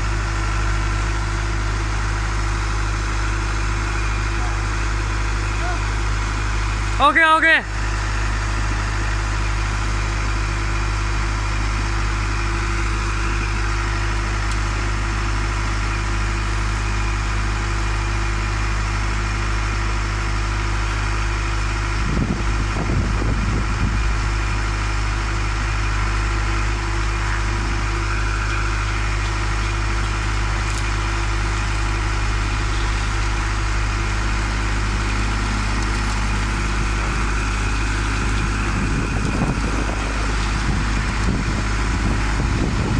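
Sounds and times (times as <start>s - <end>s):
concrete mixer engine drone: 0.0s - 42.9s
rough low rumble: 21.8s - 42.9s.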